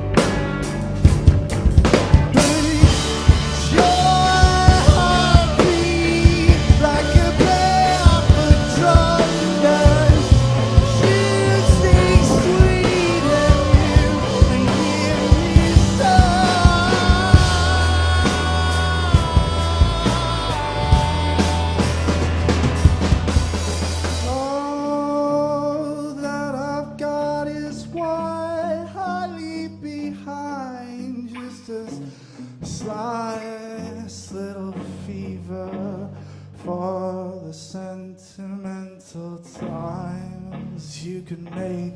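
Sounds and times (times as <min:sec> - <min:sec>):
wavering lead melody: 0:00.0 - 0:24.2
live rock band playing: 0:00.0 - 0:26.7.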